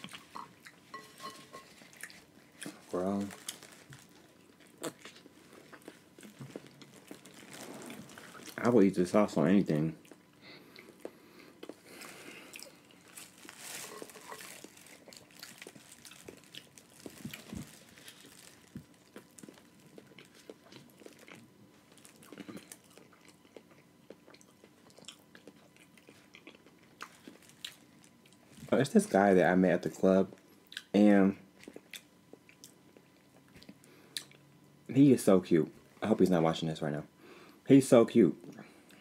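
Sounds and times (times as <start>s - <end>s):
chewing and biting: 1.8s - 8.6s, 10.0s - 28.7s
small crunches and clicks: 12.6s - 23.7s.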